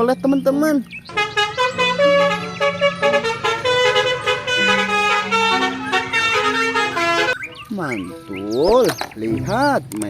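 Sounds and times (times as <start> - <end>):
musical bus horn tune: 1.1 - 7.5.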